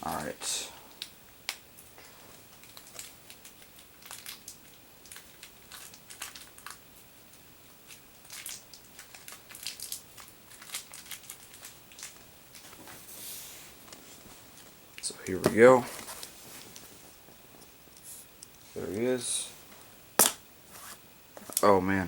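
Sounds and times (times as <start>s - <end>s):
packaging crinkling: 2.6s - 6.8s, 7.8s - 13.0s.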